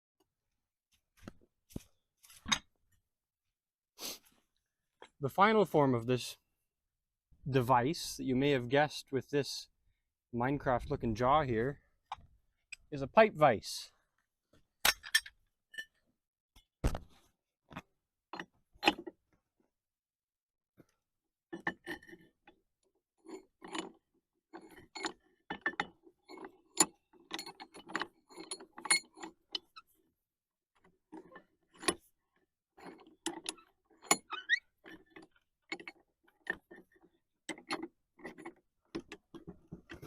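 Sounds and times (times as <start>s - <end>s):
metallic clicks and knocks of vise: 14.8s - 16.0s, 17.7s - 19.2s, 21.5s - 22.6s, 23.2s - 30.0s, 30.8s - 40.0s.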